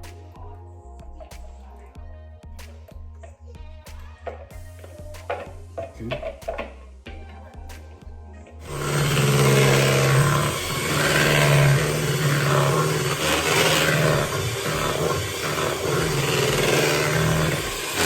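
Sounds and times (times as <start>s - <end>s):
electric mixer motor running: 8.6s - 18.0s.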